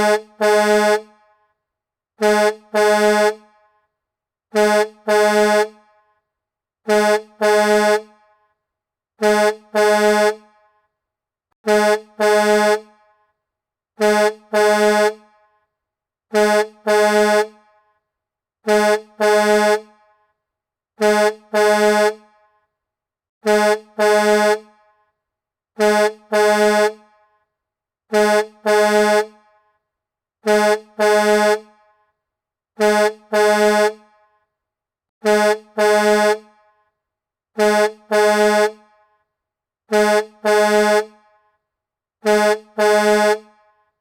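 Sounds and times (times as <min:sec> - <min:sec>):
truck horn honking: 0:00.0 - 0:01.2, 0:02.2 - 0:03.5, 0:04.5 - 0:05.9, 0:06.8 - 0:08.2, 0:09.2 - 0:10.5, 0:11.6 - 0:13.0, 0:14.0 - 0:15.3, 0:16.3 - 0:17.6, 0:18.6 - 0:20.1, 0:21.0 - 0:22.3, 0:23.4 - 0:24.7, 0:25.8 - 0:27.1, 0:28.1 - 0:29.4, 0:30.4 - 0:31.8, 0:32.8 - 0:34.1, 0:35.2 - 0:36.5, 0:37.6 - 0:38.8, 0:39.9 - 0:41.2, 0:42.2 - 0:43.6.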